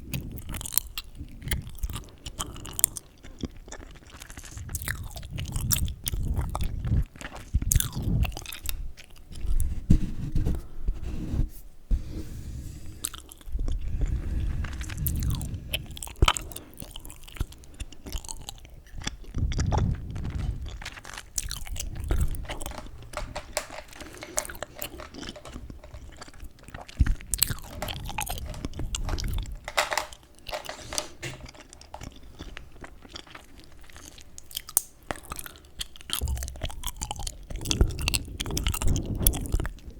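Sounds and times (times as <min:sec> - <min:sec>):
chewing gum smacks and pops: 0:00.1 - 0:09.6, 0:14.9 - 0:23.7, 0:24.4 - 0:29.7, 0:31.5 - 0:39.9
jaw thuds: 0:36.1 - 0:39.4.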